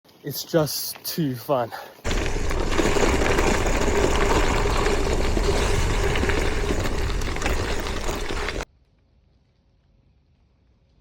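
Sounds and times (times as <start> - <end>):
bike tyres hissing on gravel: 2.1 - 8.6
wind buffeting microphone: 2.1 - 8.6.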